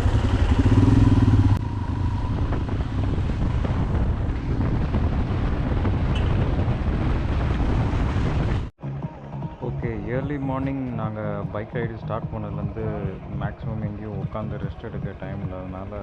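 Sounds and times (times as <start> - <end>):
wind rushing over microphone: 0.0 - 8.7
motorcycle engine humming: 0.0 - 16.0.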